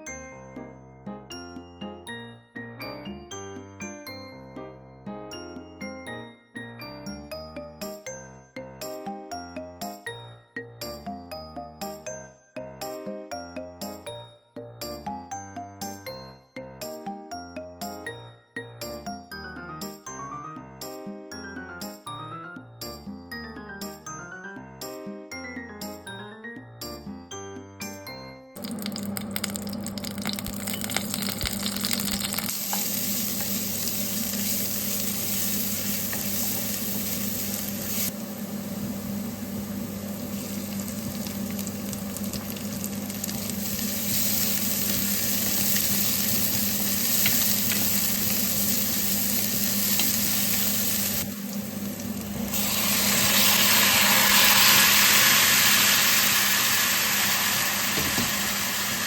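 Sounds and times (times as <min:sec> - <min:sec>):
food sizzling in a pan: 0:28.6 - 0:59.0.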